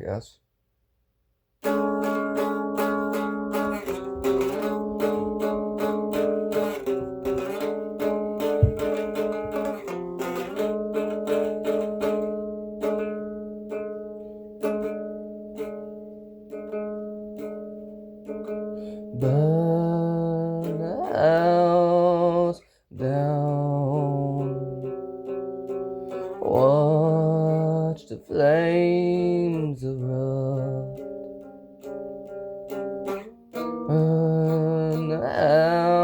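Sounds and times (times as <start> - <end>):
guitar picking chords: 1.6 - 36.0
low thump: 8.4 - 9.8.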